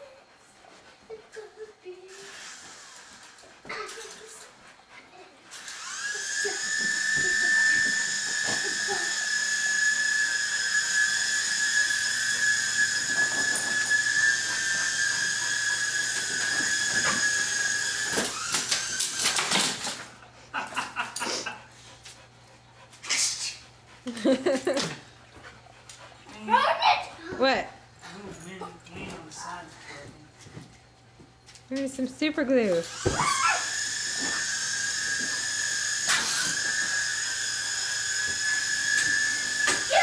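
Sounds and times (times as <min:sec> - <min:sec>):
toy helicopter motor whine: 0:02.0 - 0:04.4, 0:05.5 - 0:20.0, 0:32.7 - 0:40.0.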